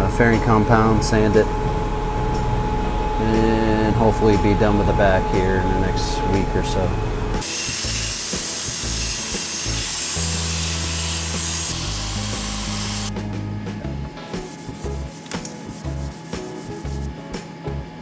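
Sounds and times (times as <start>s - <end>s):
background music: 0.0s - 18.0s
power sander hissing: 7.4s - 13.1s, 14.4s - 17.1s.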